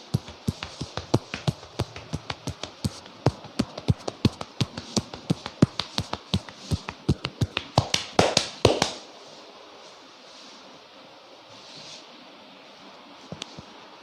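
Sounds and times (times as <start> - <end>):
hands tapping in percussive massage: 0.2 - 9.0.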